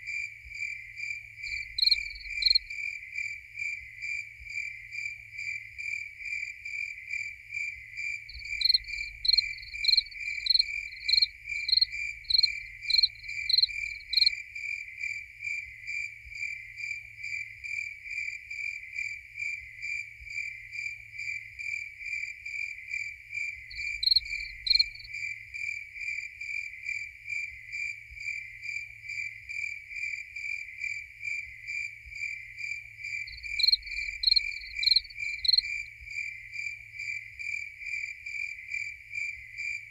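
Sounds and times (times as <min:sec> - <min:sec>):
cricket steady rapid chirp: 0:00.0 - 0:39.9
higher-pitched cricket chirping: 0:00.6 - 0:03.4, 0:06.8 - 0:16.6, 0:22.6 - 0:25.7, 0:27.8 - 0:39.9.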